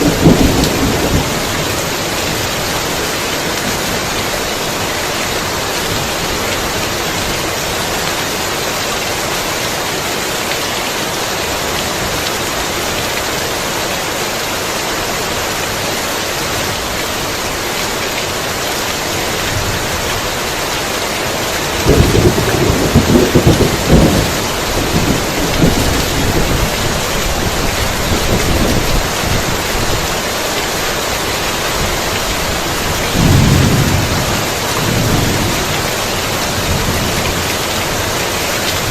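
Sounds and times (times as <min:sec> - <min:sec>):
thunder clap and rumble: 0:00.0 - 0:02.6, 0:21.8 - 0:30.1, 0:32.9 - 0:38.0
heavy rain hissing: 0:00.0 - 0:38.9.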